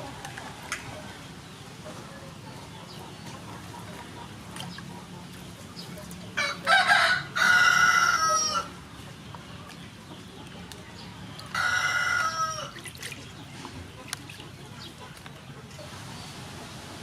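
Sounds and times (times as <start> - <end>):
rooster crowing: 6.4 - 8.7, 11.5 - 12.7.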